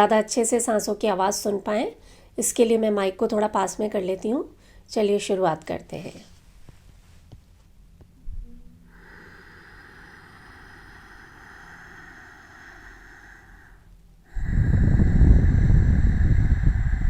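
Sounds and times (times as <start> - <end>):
soft hissing breath in: 8.8 - 17.0
loud breath out: 8.9 - 17.0.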